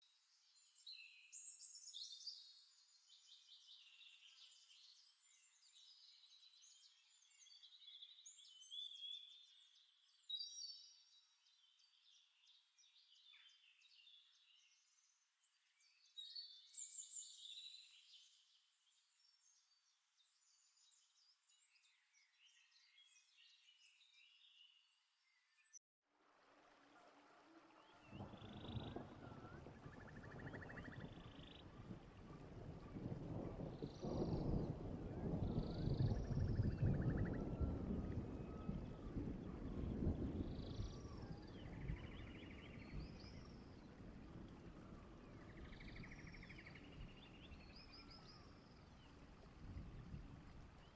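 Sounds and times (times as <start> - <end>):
birds chirping and singing: 27.8 - 33.1, 44.8 - 49.2.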